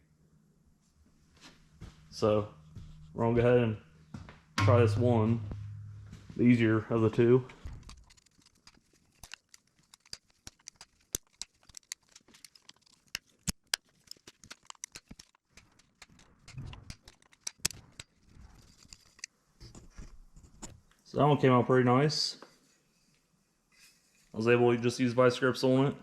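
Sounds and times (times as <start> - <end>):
heavy metal knocks: 4.6 - 6.6.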